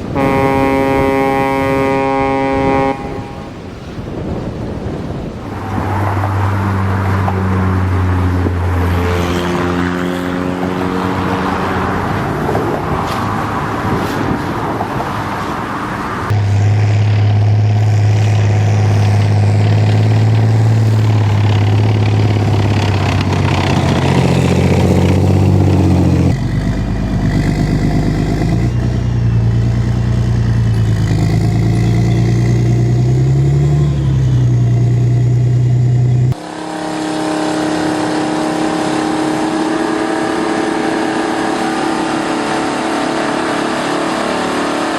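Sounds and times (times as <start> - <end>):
vehicle engine running: 16.2 - 44.9.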